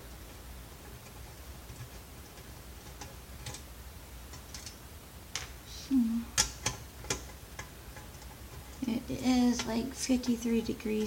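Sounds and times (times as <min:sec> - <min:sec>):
steady low hum: 0:00.0 - 0:11.0
small tools clicking and tapping: 0:06.3 - 0:08.8, 0:09.5 - 0:11.0.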